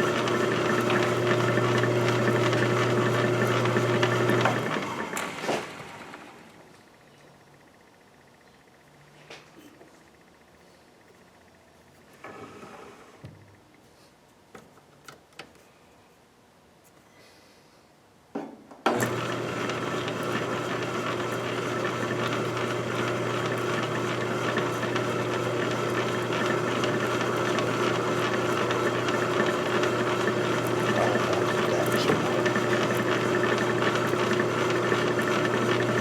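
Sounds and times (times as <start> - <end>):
power tool motor running: 19.0 - 36.0.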